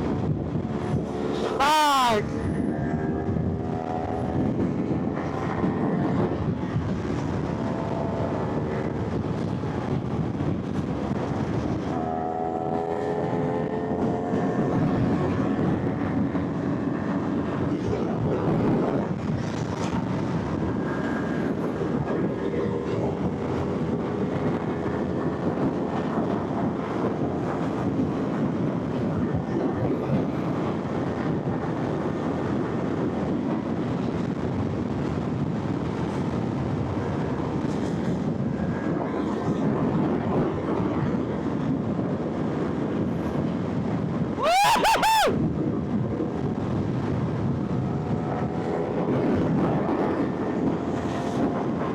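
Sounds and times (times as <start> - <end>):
wind and road noise: 0.0 - 51.9
motorcycle engine drone: 11.4 - 17.8
high-pitched rising and falling sound: 44.4 - 45.4.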